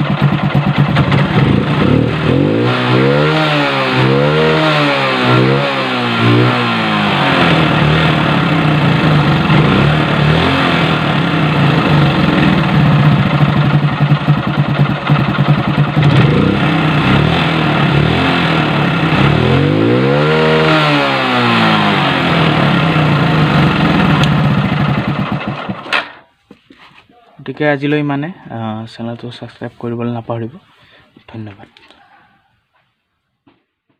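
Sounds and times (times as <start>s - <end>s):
motorcycle engine idling and revving: 0.0s - 26.2s.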